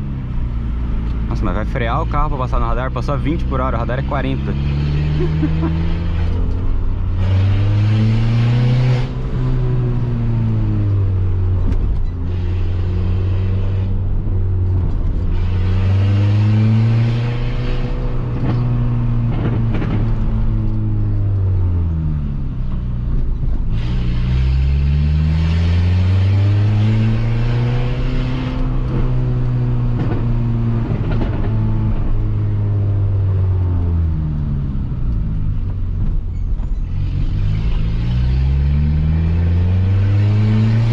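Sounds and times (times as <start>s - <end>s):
loud car exhaust engine note: 4.0s - 35.7s.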